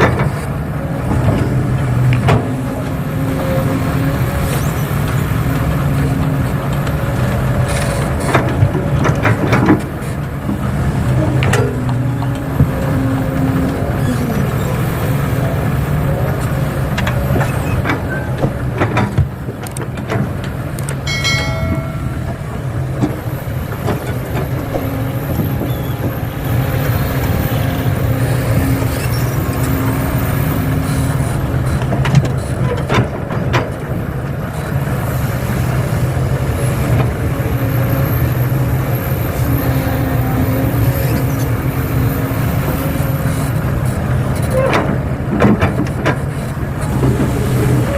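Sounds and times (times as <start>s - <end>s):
excavator running: 0.0s - 47.9s
short high tone: 21.1s - 22.6s.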